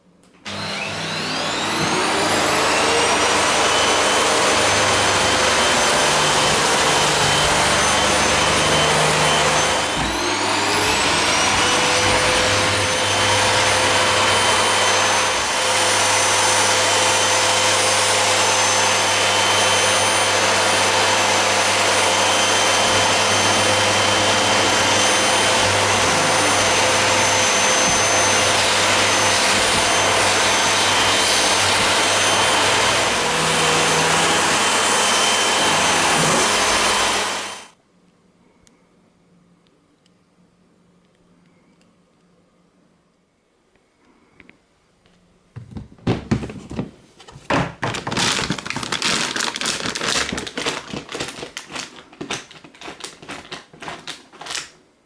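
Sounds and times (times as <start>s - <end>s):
high-speed motor whine: 0.5s - 37.7s.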